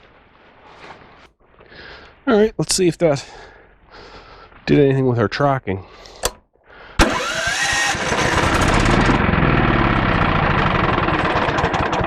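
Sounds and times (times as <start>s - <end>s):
engine starting click: 7.0s - 9.2s
sawmill whine: 7.0s - 12.0s
small engine running: 7.0s - 12.0s.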